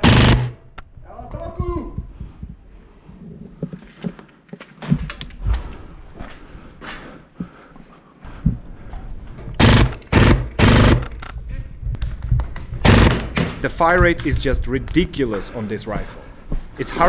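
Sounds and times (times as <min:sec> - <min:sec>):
airsoft rifle full-auto bursts: 0:00.0 - 0:00.6, 0:09.6 - 0:11.3, 0:12.8 - 0:13.3
scattered clicks and knocks: 0:09.4 - 0:15.0.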